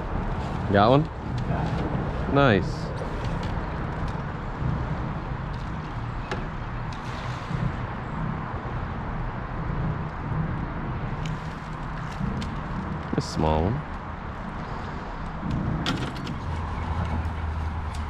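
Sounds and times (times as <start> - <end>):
wind on microphone: 0.0 - 18.0.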